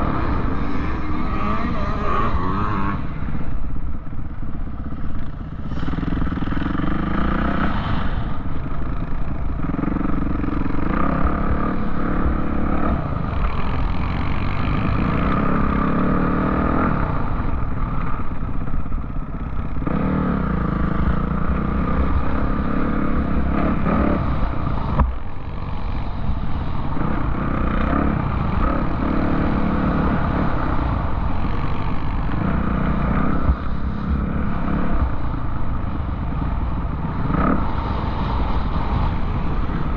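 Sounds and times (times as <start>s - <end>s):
off-road vehicle engine: 0.0s - 39.9s.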